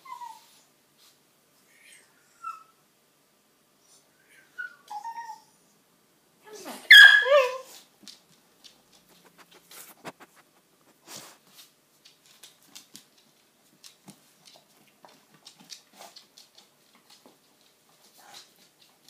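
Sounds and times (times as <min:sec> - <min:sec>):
dog sniffing and snuffling: 0:08.9 - 0:19.0.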